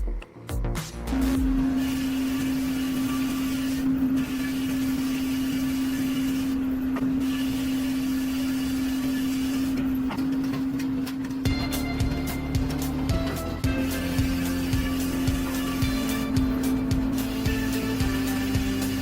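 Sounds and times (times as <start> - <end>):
machine motor humming: 1.1 - 19.0.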